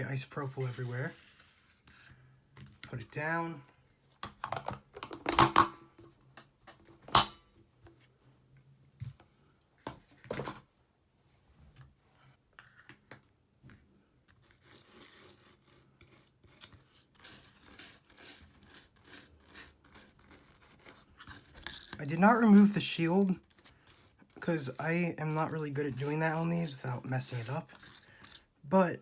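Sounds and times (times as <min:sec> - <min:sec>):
brush scrubbing: 0:17.1 - 0:28.2.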